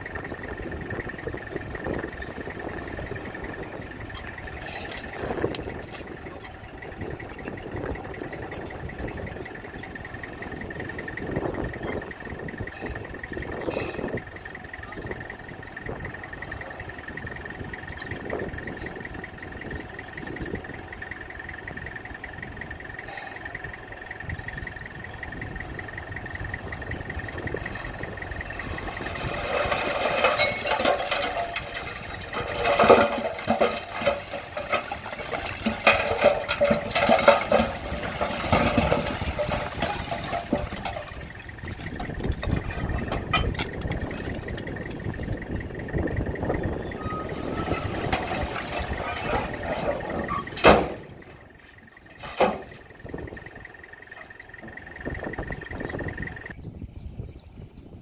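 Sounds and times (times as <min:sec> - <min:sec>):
grinding and clattering: 0:00.0 - 0:09.9, 0:25.8 - 0:56.5
bulldozer diesel engine rumble: 0:00.0 - 0:58.0.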